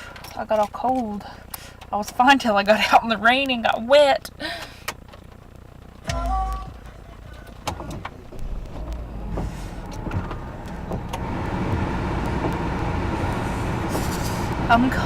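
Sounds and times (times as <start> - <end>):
heater blower fan rushing air: 6.0 - 15.0.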